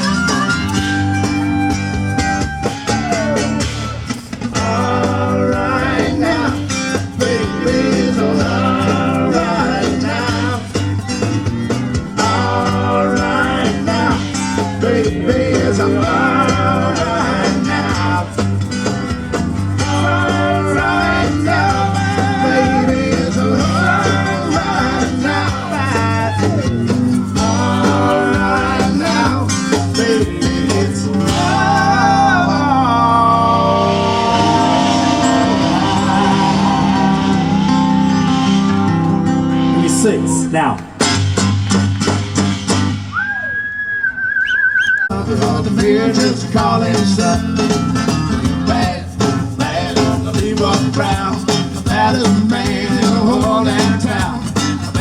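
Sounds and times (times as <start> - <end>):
lead guitar melody: 0.0 - 5.0, 31.2 - 42.1
blues-rock band music: 0.0 - 43.2, 45.1 - 55.0.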